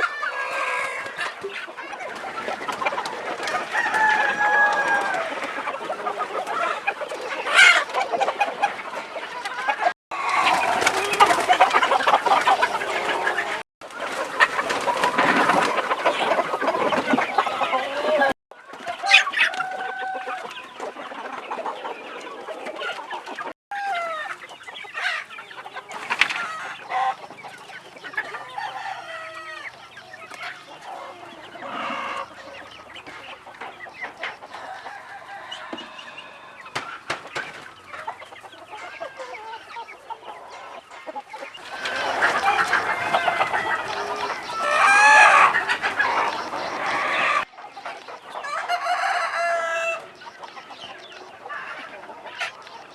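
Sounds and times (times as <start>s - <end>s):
chickens clucking: 0.0s - 52.9s
rooster crowing: 3.6s - 5.5s, 10.1s - 13.6s, 19.0s - 20.6s, 28.4s - 29.8s, 34.5s - 36.7s, 41.6s - 47.5s, 48.4s - 50.2s.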